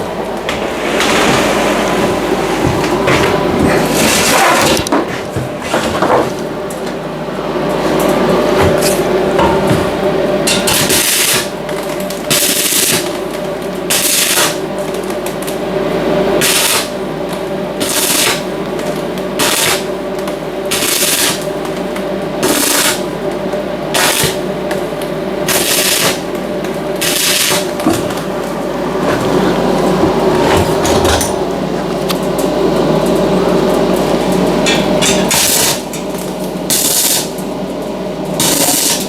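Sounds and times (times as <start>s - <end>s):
steady hum: 0.0s - 39.0s
welder crackling hiss: 10.8s - 11.5s, 12.3s - 13.1s, 13.9s - 14.6s, 16.4s - 16.9s, 17.8s - 18.5s, 19.4s - 19.9s, 20.7s - 21.5s, 22.4s - 23.0s, 23.9s - 24.4s, 25.5s - 26.2s, 27.0s - 27.7s, 38.4s - 39.0s.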